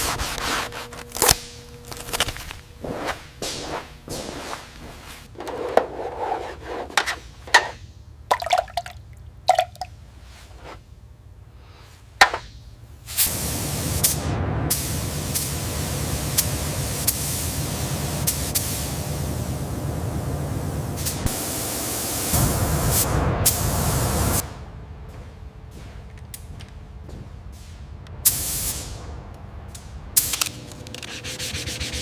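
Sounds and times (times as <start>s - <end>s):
spray gun hissing: 13.1s - 24.4s, 28.2s - 29.0s.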